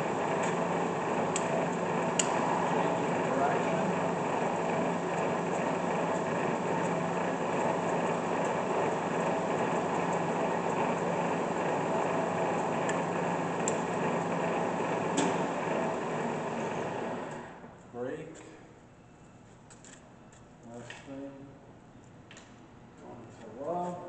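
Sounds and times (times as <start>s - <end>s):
milling machine motor hum: 0.0s - 17.7s.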